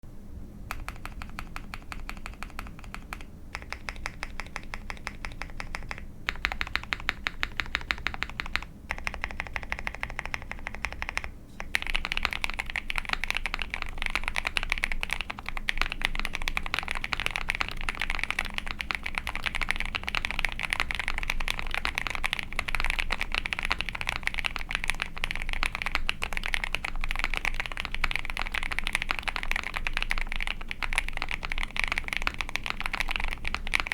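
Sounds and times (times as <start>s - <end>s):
typing on mechanical keyboard: 0.7s - 33.9s.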